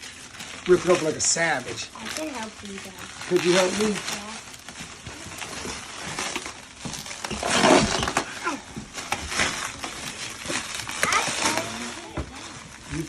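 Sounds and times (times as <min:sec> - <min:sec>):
cardboard tearing: 0:00.0 - 0:13.0.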